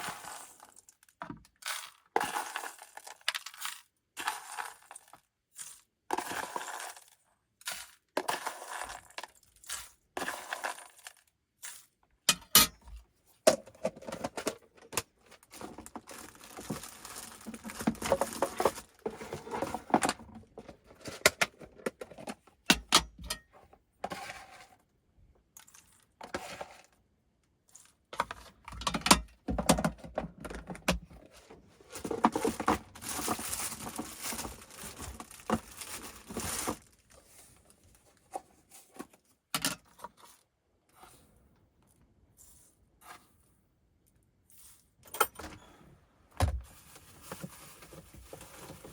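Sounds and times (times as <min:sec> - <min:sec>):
small hard objects clinking: 0:00.0 - 0:12.7, 0:15.4 - 0:20.0, 0:31.9 - 0:37.3.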